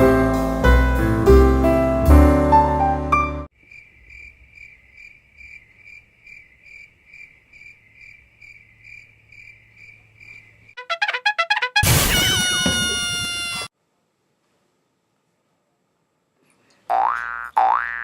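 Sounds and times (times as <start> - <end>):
cricket chirping: 3.5 - 10.8.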